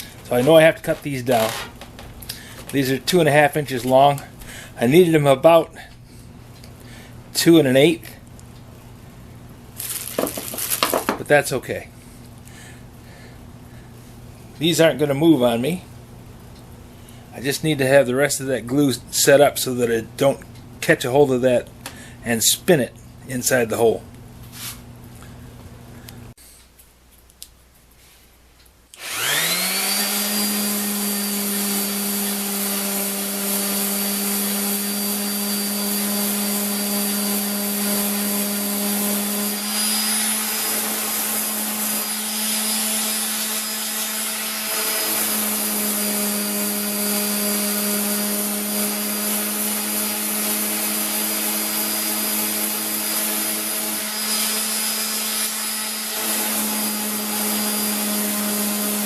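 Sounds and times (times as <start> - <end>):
high-speed electric motor whine: 29.0 - 59.0.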